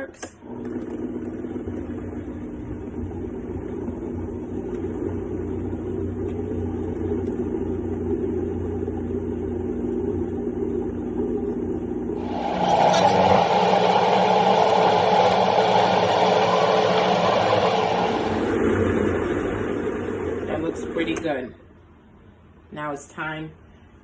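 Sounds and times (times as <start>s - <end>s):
blender motor churning fruit: 12.2s - 18.6s.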